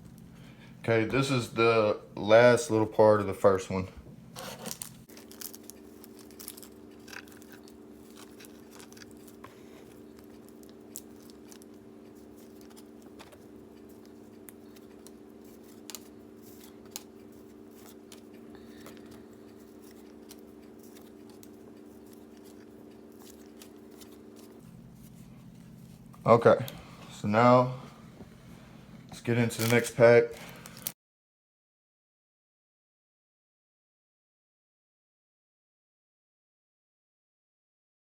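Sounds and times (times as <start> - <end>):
cards flipping with soft clicks: 29.5 - 29.9.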